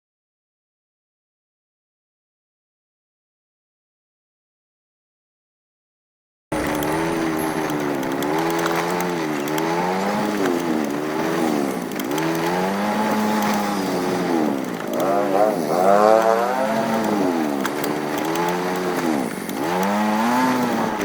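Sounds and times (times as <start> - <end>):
vehicle engine revving: 6.5 - 21.0.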